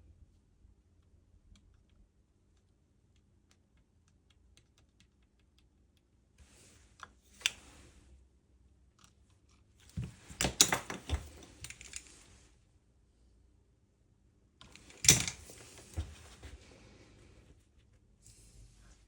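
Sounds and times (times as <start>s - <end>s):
small tools clicking and scraping: 10.4s - 12.2s.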